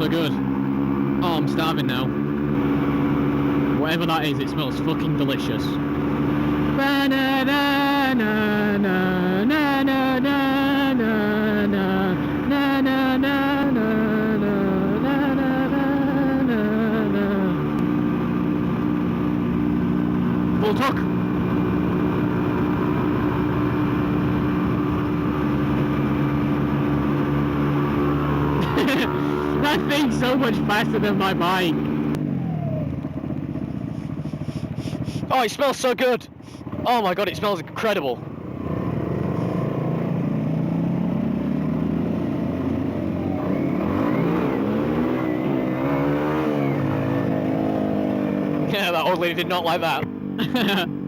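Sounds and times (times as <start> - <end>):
low engine note: 0.0 - 35.3
motorcycle engine cruising: 0.0 - 51.0
road noise: 0.0 - 51.0.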